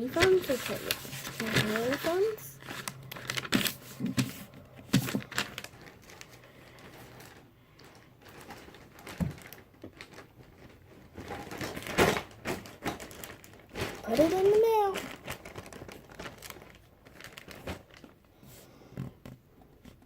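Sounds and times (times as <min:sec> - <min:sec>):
crinkling and rustling: 0:00.0 - 0:20.0.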